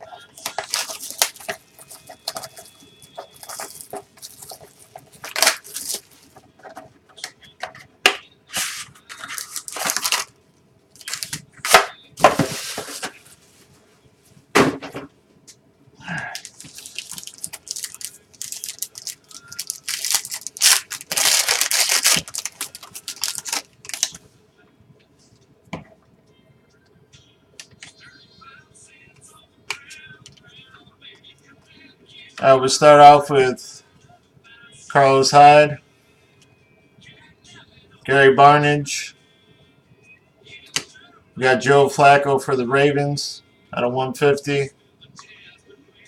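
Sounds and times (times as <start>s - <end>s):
cardboard and plastic tearing: 0.4s - 6.4s, 8.5s - 10.3s, 11.0s - 13.1s, 16.4s - 24.2s.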